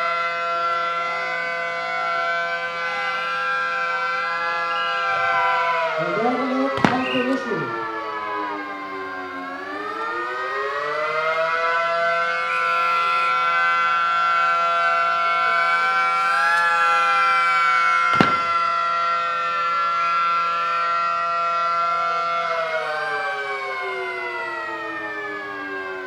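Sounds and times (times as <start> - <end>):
air raid siren wailing: 0.0 - 26.0
sharp crack: 6.6 - 7.9, 18.2 - 18.9.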